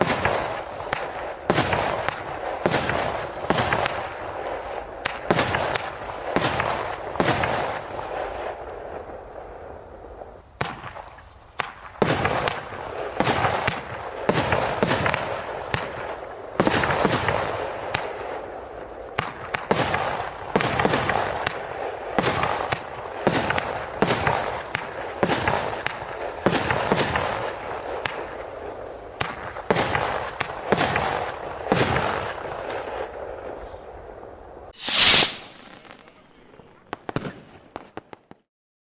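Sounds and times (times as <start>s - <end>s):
firework crackling: 0.0s - 33.0s, 34.7s - 37.3s
firework barrage bangs: 5.0s - 8.6s, 34.8s - 37.4s.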